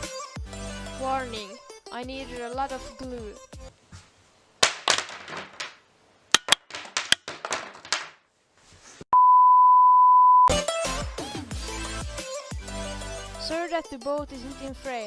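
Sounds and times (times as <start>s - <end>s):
rustling: 3.7s - 9.1s
censor bleep: 9.1s - 10.5s.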